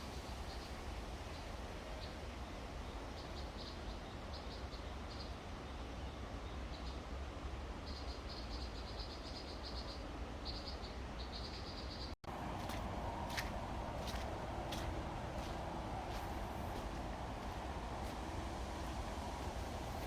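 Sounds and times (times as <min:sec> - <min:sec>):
low steady rumble: 0:12.3 - 0:20.0.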